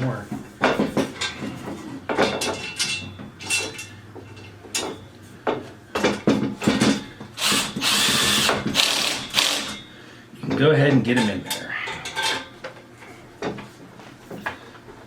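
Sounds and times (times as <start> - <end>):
power drill driving screw: 7.4 - 9.8.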